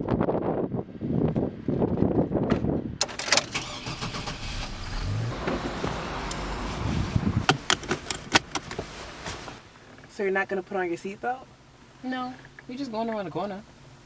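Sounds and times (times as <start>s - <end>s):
car engine starting and running: 3.0s - 10.0s
gusty rumbling: 4.3s - 9.0s.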